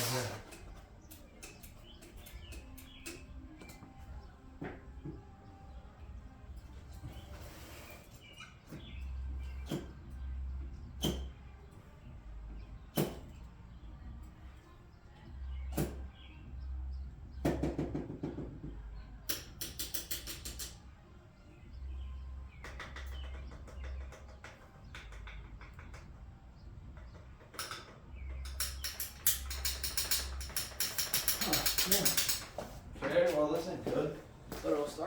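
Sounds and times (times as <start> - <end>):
rapid ratchet clicking: 19.3 - 20.8, 27.5 - 32.6.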